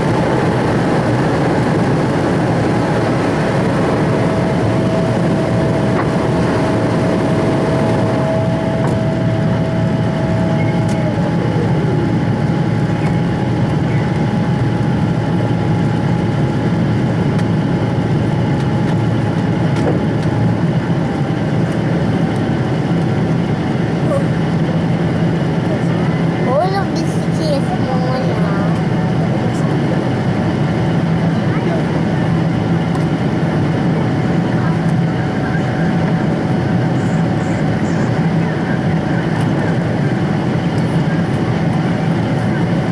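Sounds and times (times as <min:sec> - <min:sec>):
jet engine cabin rush: 0:00.0 - 0:42.9
steady engine whine: 0:00.0 - 0:42.9
whine gliding down: 0:00.1 - 0:16.2.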